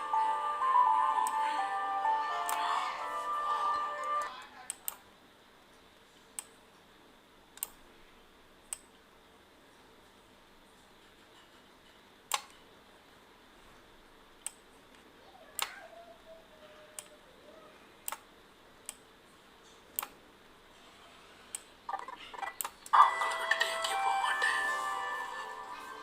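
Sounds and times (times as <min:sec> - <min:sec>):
computer mouse clicking: 0:07.6 - 0:07.8, 0:12.3 - 0:12.6, 0:18.0 - 0:19.1, 0:19.9 - 0:20.2
loud music playback: 0:23.0 - 0:26.0.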